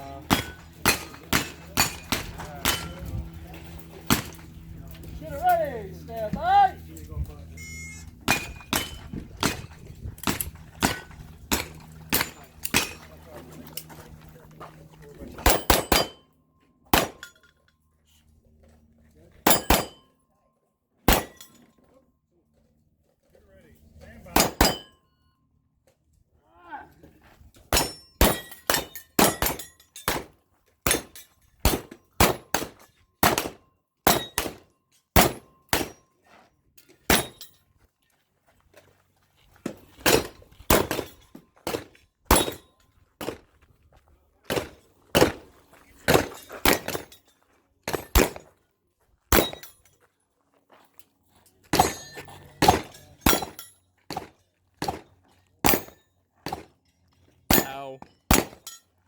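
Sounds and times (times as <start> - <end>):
pistol shots: 17.0 - 17.2, 21.1 - 21.4, 31.7 - 34.6, 35.2 - 36.0, 47.9 - 48.5, 57.5 - 58.7.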